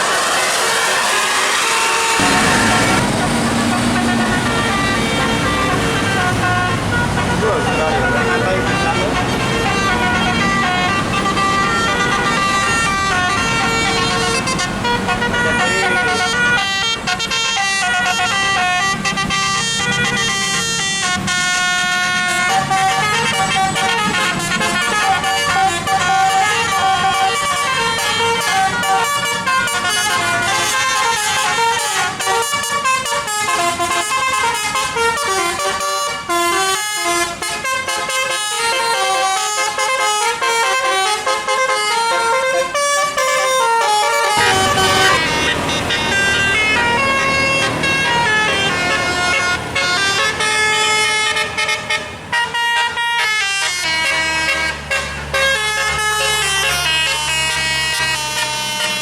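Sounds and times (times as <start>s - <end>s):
musical bus horn: 0.0s - 59.0s
low engine rumble: 2.2s - 17.0s, 44.4s - 52.4s.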